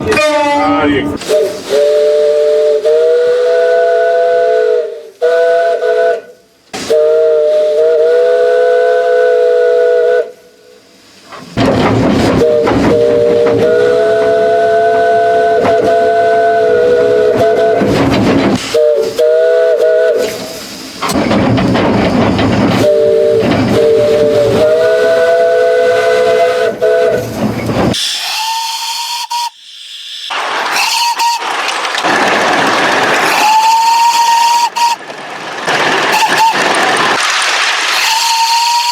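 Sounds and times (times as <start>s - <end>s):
train running noise: 0.0s - 38.9s
train horn blasts: 1.3s - 10.4s, 12.4s - 18.0s, 18.7s - 20.4s, 22.8s - 27.3s.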